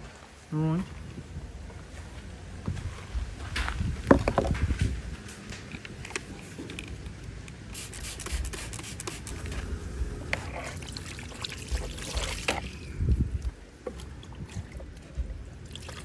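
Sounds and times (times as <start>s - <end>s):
handling knocks: 2.7s - 5.6s
hands scrubbing: 7.8s - 16.0s
water trickling: 9.3s - 16.0s.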